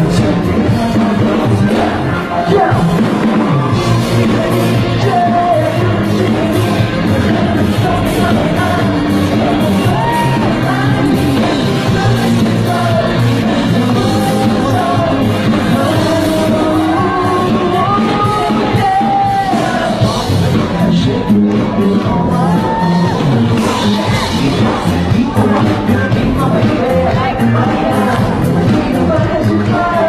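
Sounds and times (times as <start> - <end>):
fans yelling: 0.0 - 30.0
loud amplified pop music: 0.0 - 30.0
person singing: 0.0 - 30.0.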